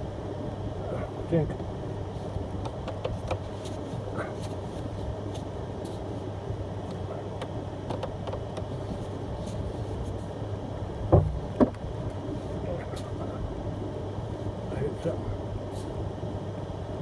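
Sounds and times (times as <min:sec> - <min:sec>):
loud knocks of truck striking: 0:11.1 - 0:11.8.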